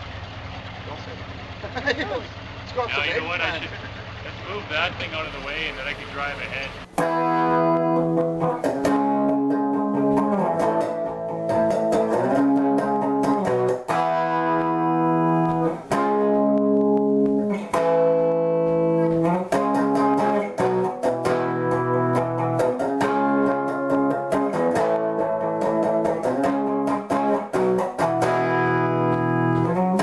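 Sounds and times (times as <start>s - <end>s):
electric guitar sustained chords: 6.8s - 30.0s.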